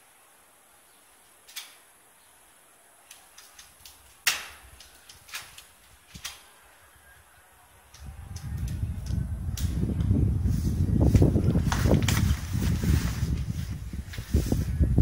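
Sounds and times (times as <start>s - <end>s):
airsoft guns firing: 4.2s - 4.7s.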